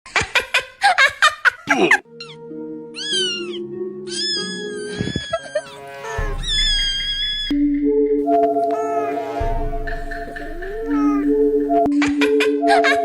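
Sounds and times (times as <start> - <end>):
background music of held notes: 2.0 - 13.0
cat meowing: 2.2 - 2.4, 3.0 - 7.5, 8.6 - 9.4.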